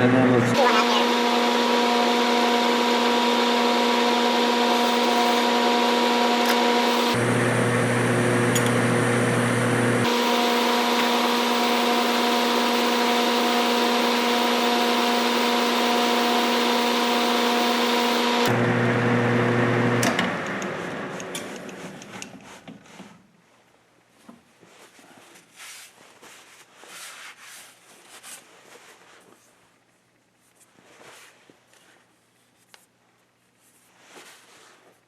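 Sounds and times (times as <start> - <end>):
metal lathe humming: 1.1 - 20.7.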